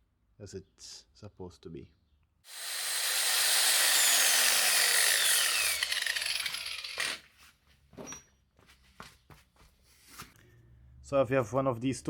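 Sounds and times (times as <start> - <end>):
power grinder cutting metal chain: 2.5 - 7.2.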